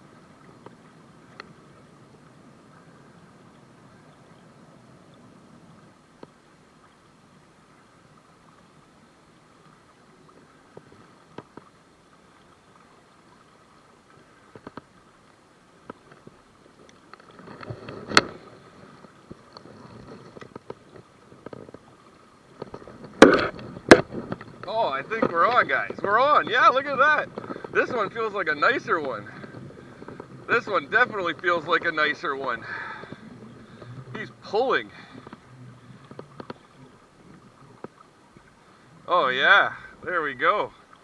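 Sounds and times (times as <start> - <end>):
river water gurgling: 0.0 - 41.0
loud sharp knocks: 23.2 - 24.1.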